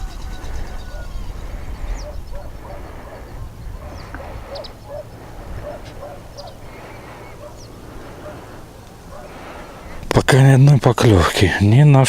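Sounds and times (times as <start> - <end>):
wind rumble on microphone: 0.0 - 6.9.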